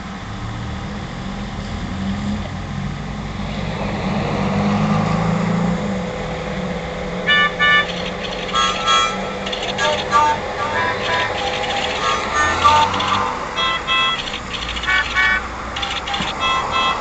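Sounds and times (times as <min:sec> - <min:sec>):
road traffic: 0:00.0 - 0:17.0
vehicle engine running: 0:00.0 - 0:17.0
car horn tooting: 0:07.3 - 0:17.0.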